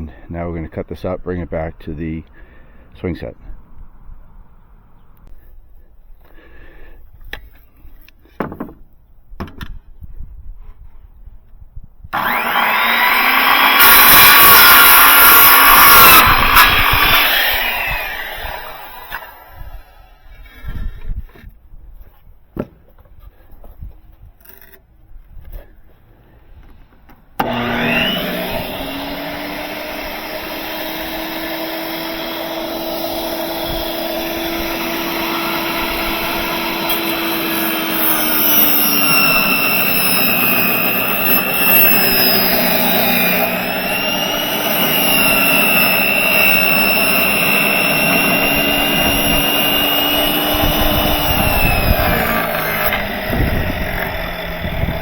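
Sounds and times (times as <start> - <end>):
table saw ripping wood: 12.2 - 20.2, 27.4 - 55.0.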